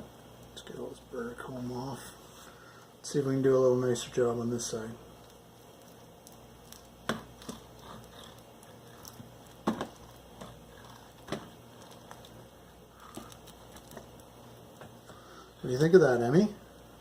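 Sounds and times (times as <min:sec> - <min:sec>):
knife scraping wax off honeycomb: 0:05.2 - 0:14.9.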